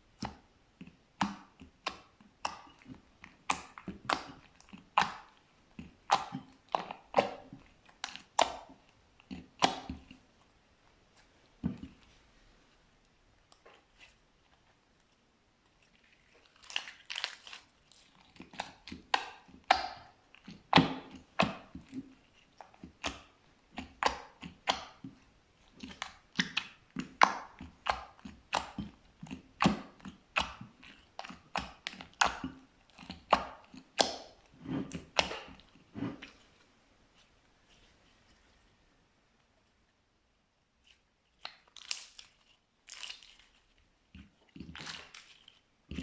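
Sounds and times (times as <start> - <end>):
slime squishing with sticky pops: 0.1 - 10.4, 15.7 - 36.5, 40.8 - 46.0.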